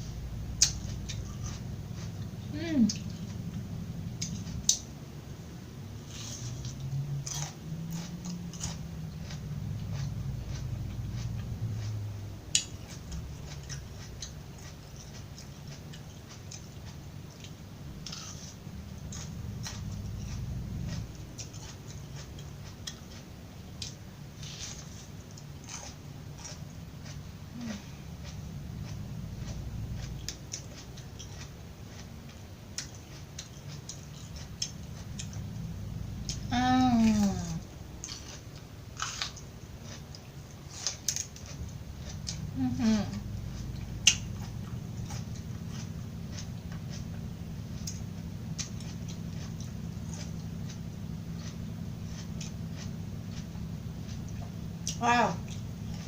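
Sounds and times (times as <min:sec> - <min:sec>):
chewing crunchy vegetables: 0:00.0 - 0:56.0
low hum: 0:00.0 - 0:56.0
low mouth rumble: 0:35.0 - 0:37.8, 0:41.9 - 0:56.0.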